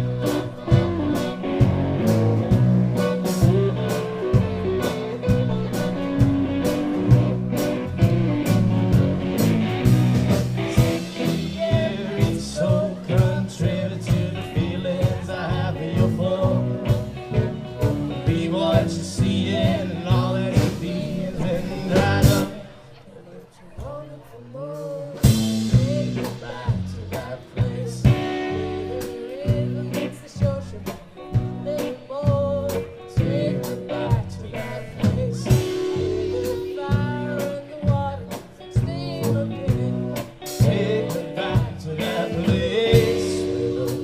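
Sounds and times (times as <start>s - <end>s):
person singing: 0.0s - 9.4s, 10.6s - 22.8s, 23.7s - 44.0s
live blues band playing: 0.0s - 22.9s, 24.8s - 44.0s.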